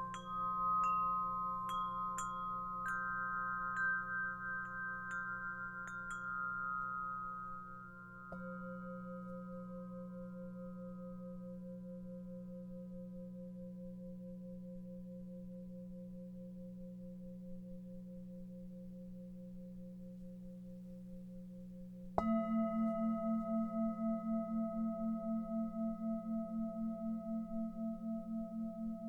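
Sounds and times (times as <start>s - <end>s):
singing bowl struck and ringing: 0.0s - 10.0s, 22.2s - 29.0s
singing bowl humming: 0.0s - 14.4s, 22.2s - 29.0s.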